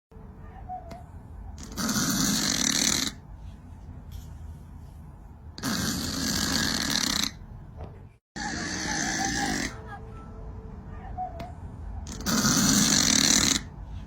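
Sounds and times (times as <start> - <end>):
cat snoring: 1.6 - 3.2, 5.6 - 7.4, 12.1 - 13.7.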